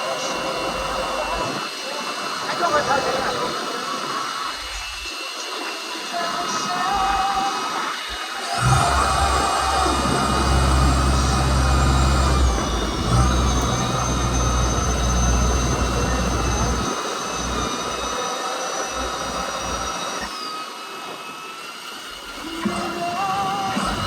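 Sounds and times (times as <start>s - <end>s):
high whine: 0.0s - 24.0s
boat engine rumble: 8.6s - 18.2s.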